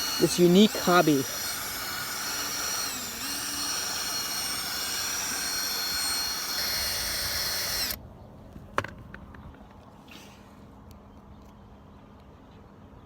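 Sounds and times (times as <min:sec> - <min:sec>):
power drill whining: 0:00.0 - 0:08.0.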